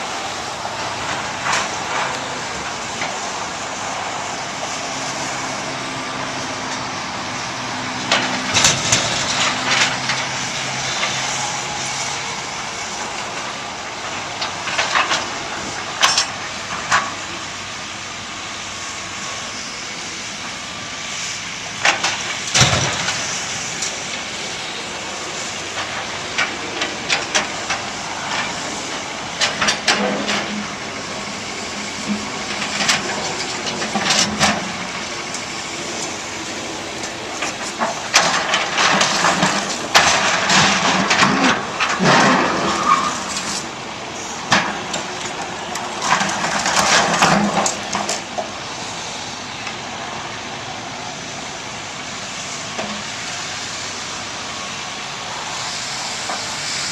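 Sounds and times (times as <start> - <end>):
diesel engine running: 0.0 - 56.9.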